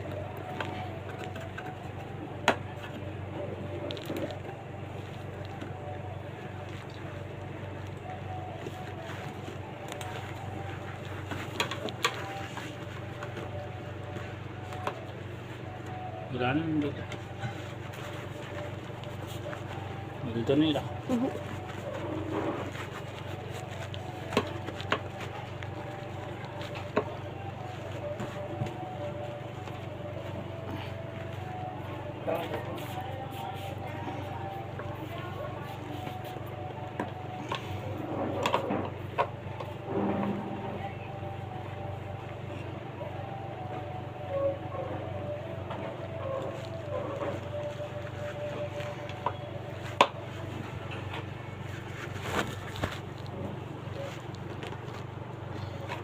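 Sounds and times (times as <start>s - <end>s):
faint clicks and handling noise: 0.0s - 16.1s, 20.8s - 33.7s, 45.3s - 56.0s
steady low hum: 0.0s - 56.0s.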